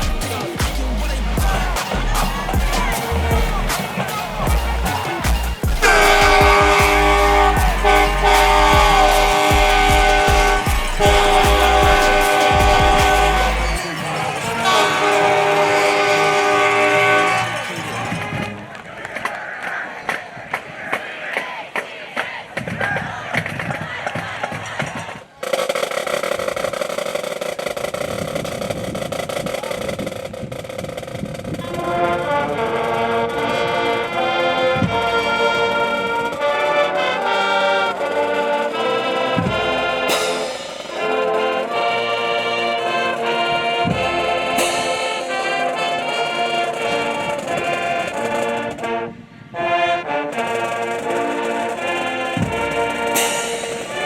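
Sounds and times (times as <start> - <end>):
brass band playing: 0.0 - 19.1, 31.6 - 54.0.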